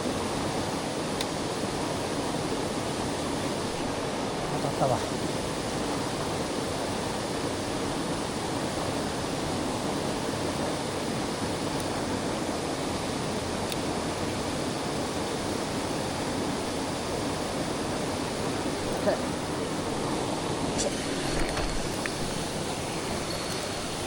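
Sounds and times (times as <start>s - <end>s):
stream water rushing over rocks: 0.0s - 24.0s.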